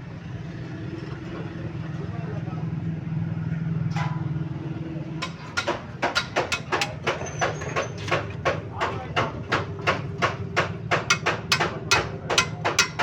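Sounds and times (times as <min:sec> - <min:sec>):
sharp knocks: 0:05.2 - 0:13.0.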